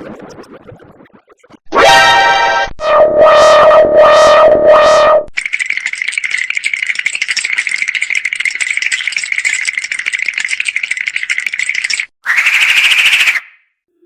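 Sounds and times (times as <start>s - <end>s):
cartoon rattle of fine clicks: 5.4s - 13.4s.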